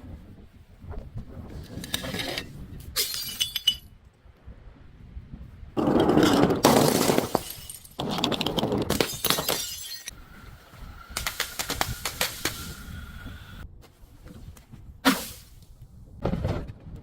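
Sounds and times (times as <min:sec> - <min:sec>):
glass fragments crushed: 0:03.0 - 0:03.8, 0:06.6 - 0:10.1
glass bottle breaking: 0:03.0 - 0:03.9, 0:06.2 - 0:10.2.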